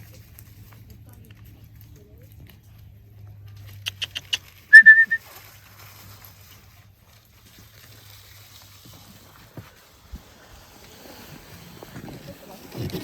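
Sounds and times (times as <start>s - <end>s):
high whistled note: 4.7s - 5.2s.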